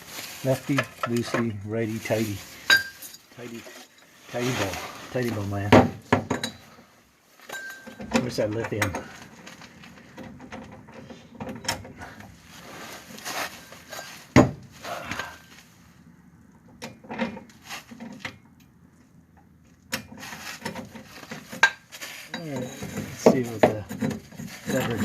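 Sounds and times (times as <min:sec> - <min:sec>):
tools clinking on hard surface: 0:07.5 - 0:08.0.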